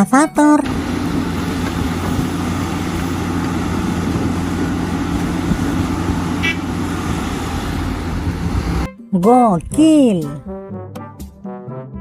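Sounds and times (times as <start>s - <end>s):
engine-like rumble: 0.0s - 8.9s.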